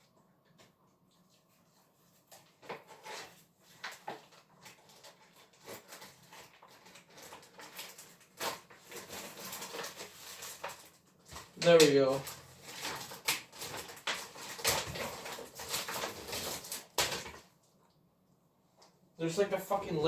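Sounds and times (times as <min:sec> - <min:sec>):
plastic packaging crinkling: 0:02.3 - 0:17.5.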